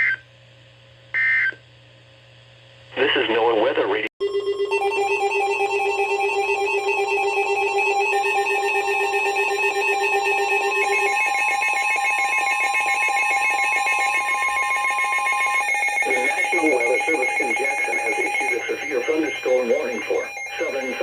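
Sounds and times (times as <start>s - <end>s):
steady single alarm tone: 4.2s - 21.0s
warbling electronic alert: 4.2s - 21.0s.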